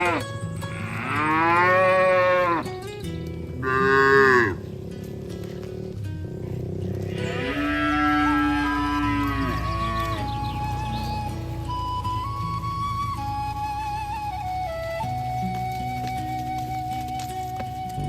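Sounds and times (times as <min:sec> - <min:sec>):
cattle mooing: 0:00.0 - 0:12.1.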